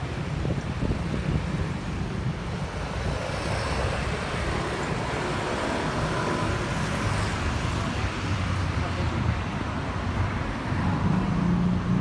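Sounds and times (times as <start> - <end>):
wind on microphone: 0.0 - 8.4
street traffic rumble: 0.0 - 12.0.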